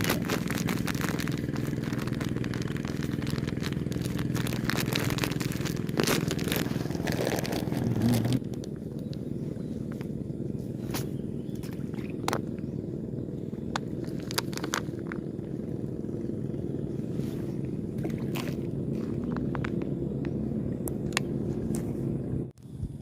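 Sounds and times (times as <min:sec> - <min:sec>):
clicks and rattles: 0:00.0 - 0:09.2
engine running steadily: 0:00.0 - 0:23.0.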